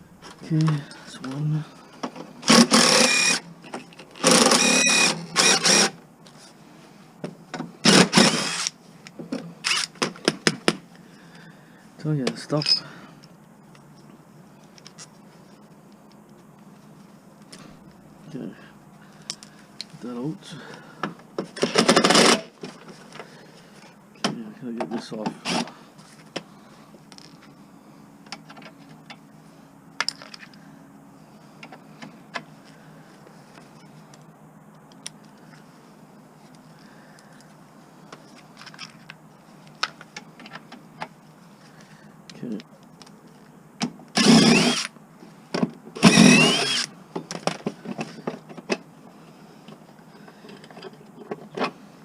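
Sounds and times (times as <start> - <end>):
cordless drill whine: 2.4 - 3.5, 4.2 - 6.0, 7.8 - 8.7, 9.6 - 9.9, 44.2 - 44.9, 46.0 - 46.9.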